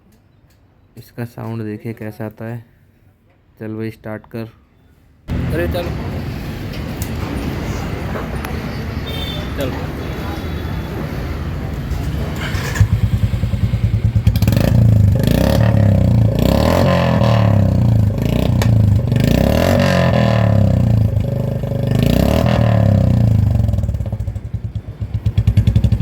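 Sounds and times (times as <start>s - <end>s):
motorcycle engine idling and revving: 12.0s - 26.0s.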